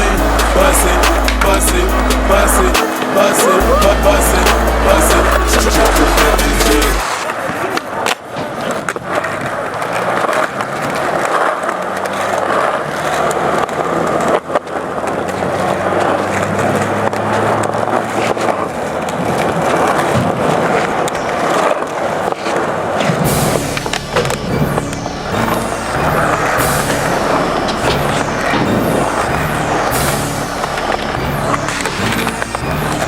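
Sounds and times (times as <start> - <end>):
music with deep bass: 0.0 - 7.0, 23.4 - 33.0
skateboard clacks: 0.0 - 33.0
skateboard wheels rolling on concrete: 0.0 - 33.0.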